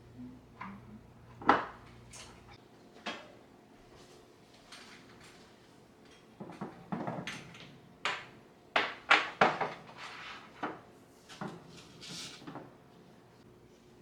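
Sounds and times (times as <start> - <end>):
household knocks and clatters: 6.4 - 10.8.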